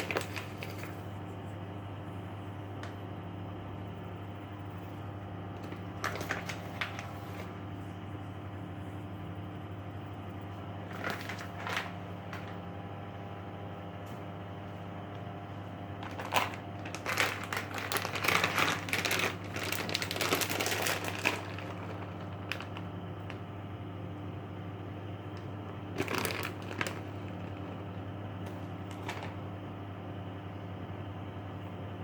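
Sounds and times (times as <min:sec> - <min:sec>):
crinkling rustling noise: 0:00.0 - 0:01.5, 0:05.6 - 0:07.6, 0:10.8 - 0:12.7, 0:16.0 - 0:23.5, 0:25.4 - 0:29.5
steady electrical hum: 0:00.0 - 0:32.0.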